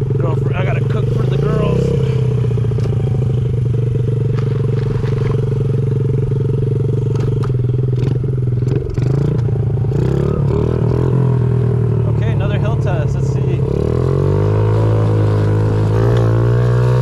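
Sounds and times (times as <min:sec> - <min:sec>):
mini bike engine running: 0:00.0 - 0:12.8.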